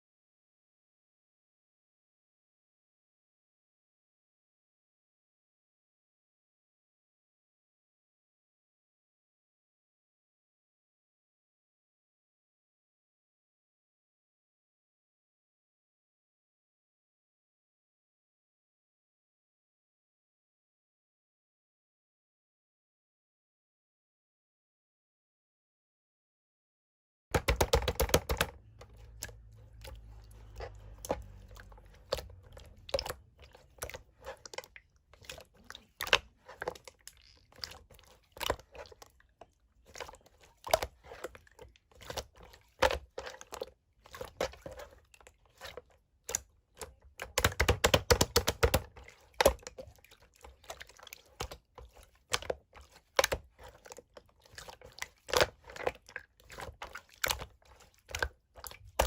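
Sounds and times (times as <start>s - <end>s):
slime clicking and popping: 47.3s - 48.9s.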